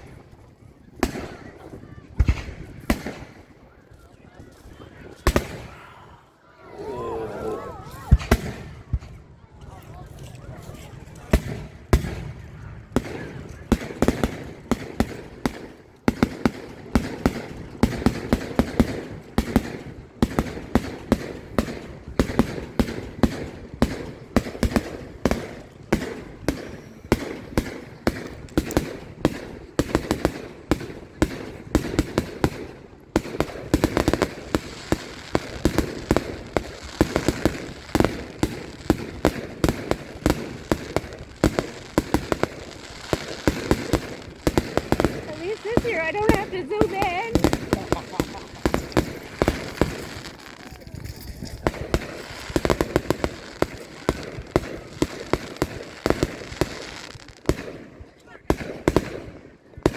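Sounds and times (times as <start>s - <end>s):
fireworks bursting and cracking: 0.0s - 5.8s, 7.9s - 59.9s.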